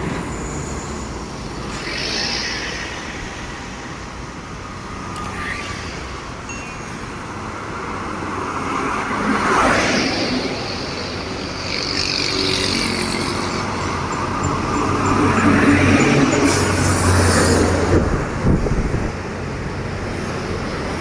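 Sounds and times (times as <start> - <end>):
road traffic passing: 0.0 - 21.0.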